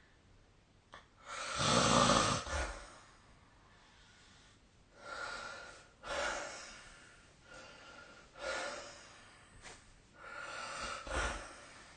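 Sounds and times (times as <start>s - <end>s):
person snoring: 1.2s - 3.0s.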